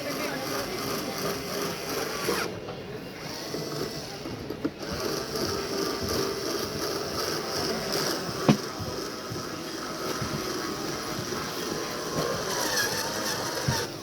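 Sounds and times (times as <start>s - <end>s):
screws being tightened: 3.5s - 14.0s.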